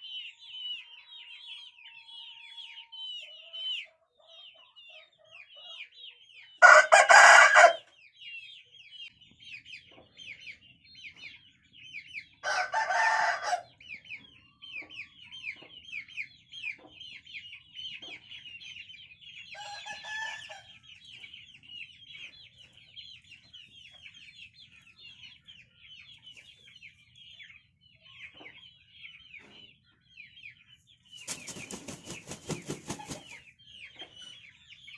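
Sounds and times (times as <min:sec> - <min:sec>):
small birds chirping: 0:00.0 - 0:34.9
roosters crowing: 0:06.6 - 0:07.8, 0:12.4 - 0:13.7.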